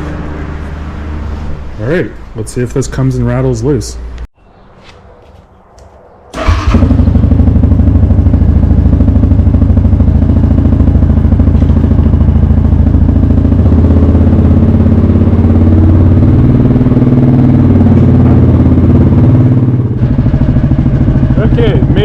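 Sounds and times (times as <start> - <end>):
atv engine starting and idling: 6.3 - 22.0.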